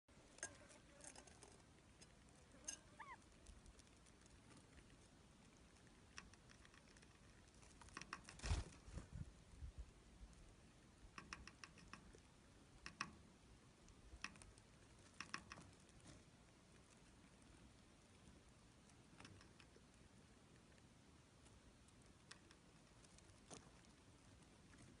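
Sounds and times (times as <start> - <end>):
small birds chirping: 1.6 - 8.0.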